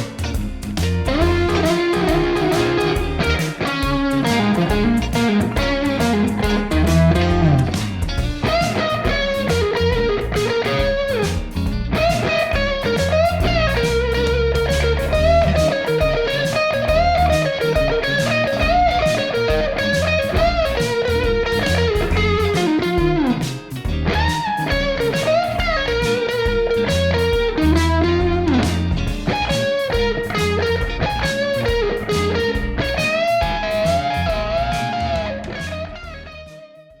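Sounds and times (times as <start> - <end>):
backing track with steady beat: 0.0 - 36.7
electric guitar blues lead: 0.0 - 36.9.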